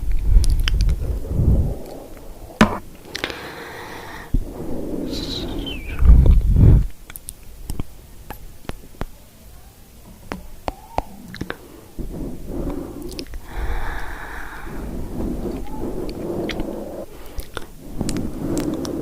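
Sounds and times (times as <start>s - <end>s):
low rumbling rub on microphone: 0.0s - 2.9s, 4.3s - 6.9s, 12.0s - 17.1s
wet mouth clicks: 11.3s - 11.6s, 13.0s - 13.5s, 15.6s - 19.0s.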